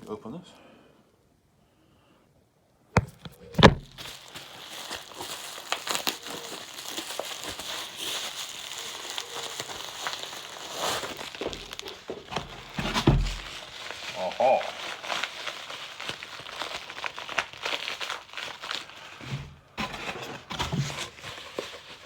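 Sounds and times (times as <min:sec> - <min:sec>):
packaging crinkling and tearing: 0:03.0 - 0:22.0.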